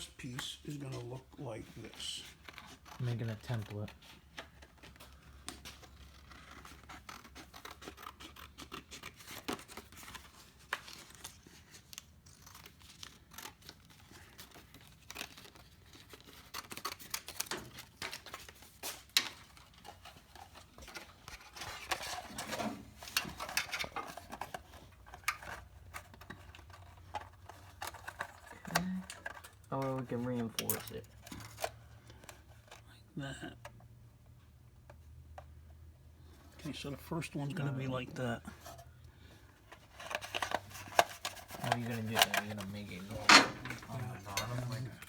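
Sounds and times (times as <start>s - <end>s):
scissors snipping paper: 2.3s - 22.2s.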